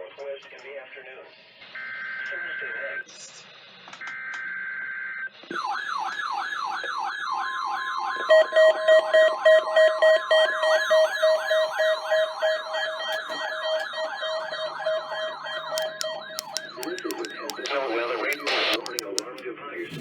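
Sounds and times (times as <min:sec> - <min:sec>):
steady alarm tone: 0:05.6 - 0:17.7
rapid loud beeping: 0:08.3 - 0:19.4
siren-like falling sweep: 0:10.5 - 0:17.7
data burst: 0:10.6 - 0:19.4.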